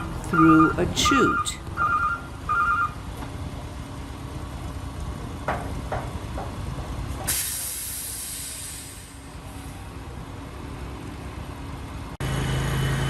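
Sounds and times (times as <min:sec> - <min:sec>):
reversing alarm beeping: 0:00.0 - 0:03.0
diesel truck engine running: 0:00.0 - 0:13.0.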